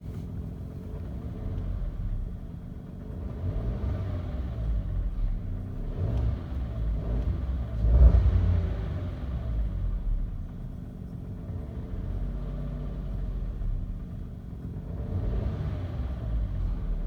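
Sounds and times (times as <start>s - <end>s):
car engine revving: 3.2s - 5.0s, 5.6s - 10.1s, 14.8s - 17.0s.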